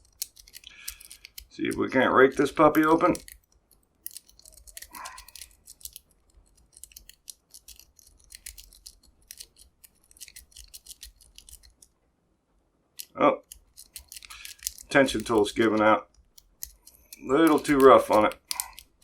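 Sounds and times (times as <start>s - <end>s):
lock pick clicking in padlock: 0.0s - 11.9s, 13.0s - 19.0s.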